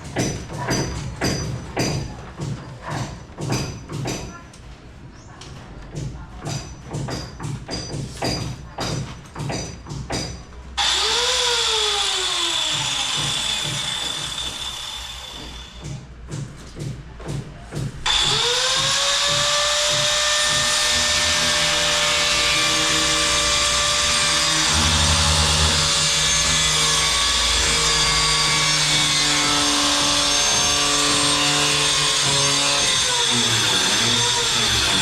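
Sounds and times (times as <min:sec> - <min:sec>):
power tool running: 0:10.8 - 0:15.8, 0:18.0 - 0:35.0.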